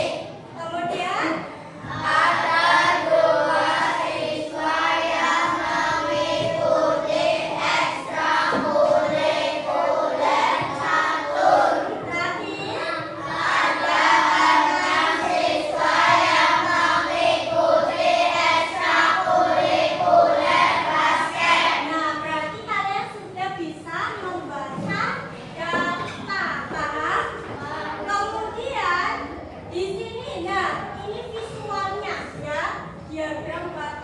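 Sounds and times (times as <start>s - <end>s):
children singing in unison: 1.8s - 12.1s, 13.1s - 21.9s.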